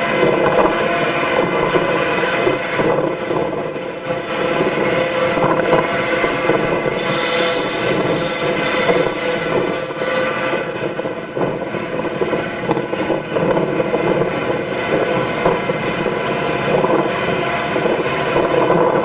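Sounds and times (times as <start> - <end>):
farm machine engine running: 0.0 - 19.0.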